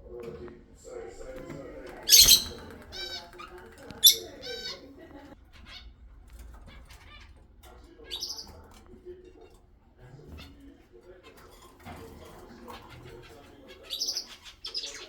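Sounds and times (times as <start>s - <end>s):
parrots chirping: 1.9s - 4.9s, 8.0s - 8.6s, 13.1s - 15.0s
parrot screeching: 2.1s - 3.3s, 4.0s - 4.8s.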